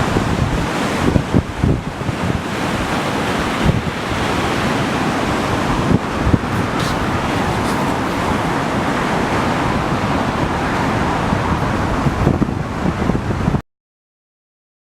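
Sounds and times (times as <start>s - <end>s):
sea surf washing in: 0.0s - 13.6s
wind buffeting microphone: 0.0s - 13.6s.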